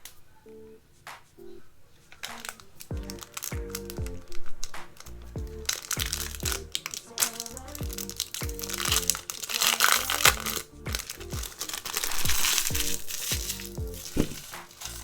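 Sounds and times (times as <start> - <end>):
foil wrappers crinkling: 2.1 - 15.0
background music with bass beat: 2.9 - 6.8, 7.5 - 9.3, 10.0 - 15.0.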